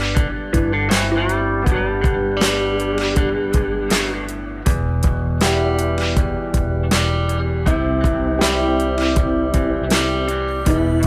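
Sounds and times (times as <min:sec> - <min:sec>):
steady beat: 0:00.0 - 0:11.0.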